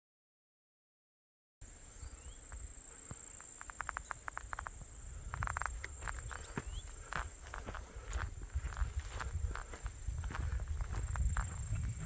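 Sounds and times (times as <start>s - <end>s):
insects chirring: 1.6s - 12.0s
short crunches and clicks: 3.3s - 6.6s.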